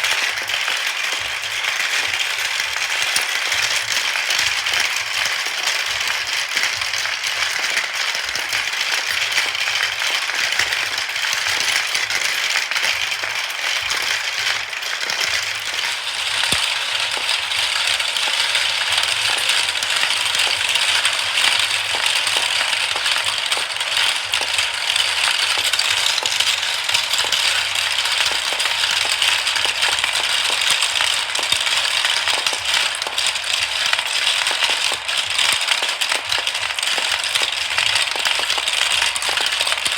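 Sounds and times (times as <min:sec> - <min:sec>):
marbles rattling down a track: 0:00.0 - 0:39.9.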